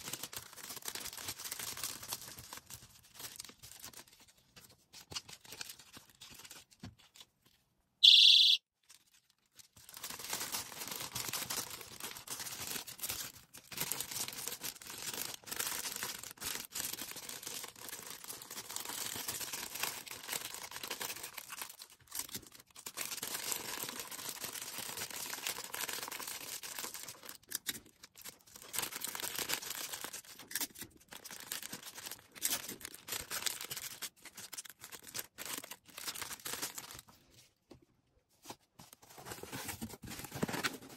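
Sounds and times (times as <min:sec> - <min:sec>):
packaging rustling and crinkling: 0:00.0 - 0:07.5, 0:08.8 - 0:37.6, 0:38.4 - 0:40.9
high-pitched alarm tone: 0:08.0 - 0:08.6.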